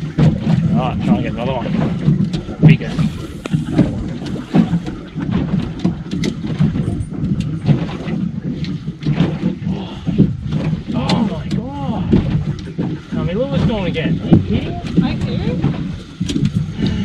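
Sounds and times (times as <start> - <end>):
waves slapping against hull: 0.0 - 17.0
wind rumble on microphone: 0.0 - 17.0.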